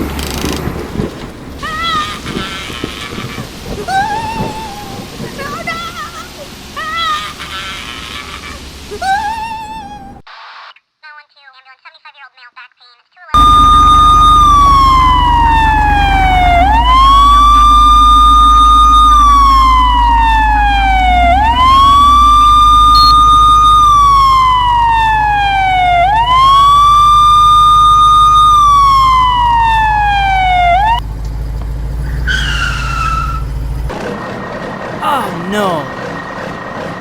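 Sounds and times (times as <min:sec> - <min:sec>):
police car siren: 0:13.4 - 0:31.0.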